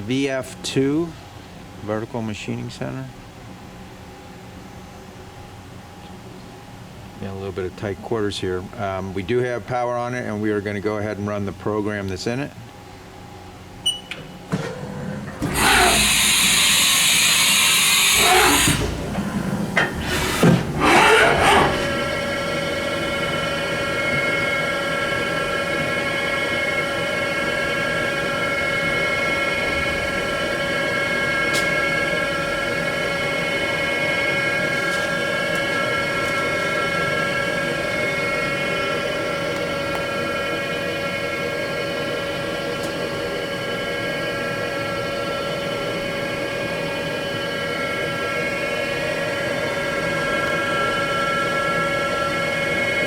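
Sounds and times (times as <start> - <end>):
spindle whine: 0.0 - 53.0
loud hiss: 15.4 - 24.1.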